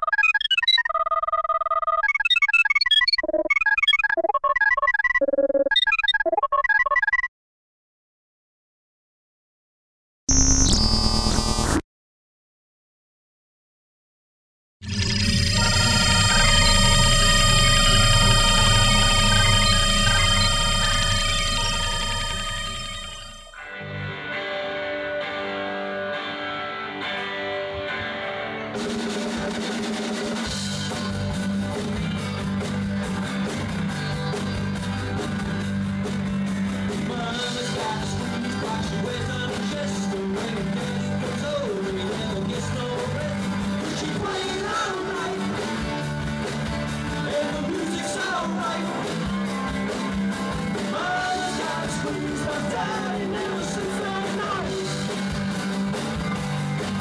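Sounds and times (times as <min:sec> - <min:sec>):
electric guitar: 0:15.0 - 0:57.0
person singing: 0:37.1 - 0:45.6, 0:51.0 - 0:55.0
rock band playing: 0:48.8 - 0:57.0.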